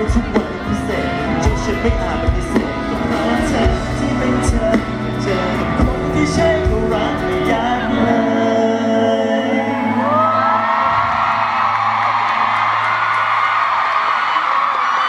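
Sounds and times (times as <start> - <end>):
steady drum beat: 0.0 - 7.8
live pop song loud: 0.0 - 15.0.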